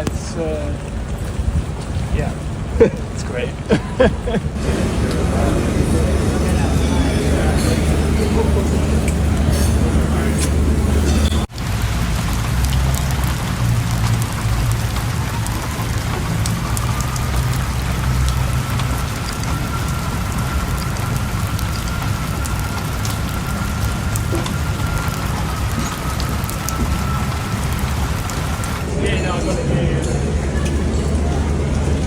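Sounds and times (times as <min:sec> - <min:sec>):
faint high whine: 0:04.6 - 0:11.5
heavy rain falling: 0:04.6 - 0:32.0.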